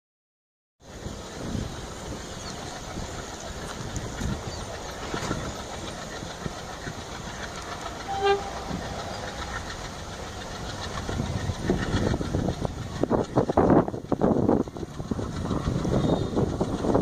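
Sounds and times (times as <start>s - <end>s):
train wheels rumbling on rails: 0.8s - 17.0s
rain hissing: 0.9s - 13.8s
diesel locomotive horn: 8.0s - 8.9s.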